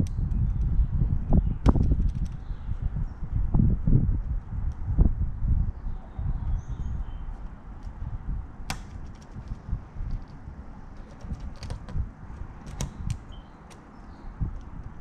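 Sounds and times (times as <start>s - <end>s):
lock pick clicking: 8.7s - 12.0s, 12.6s - 13.9s.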